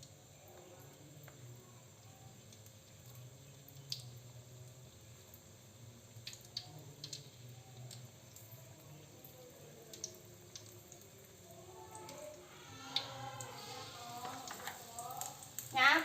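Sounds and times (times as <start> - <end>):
wet squishing and dripping: 9.8 - 15.8.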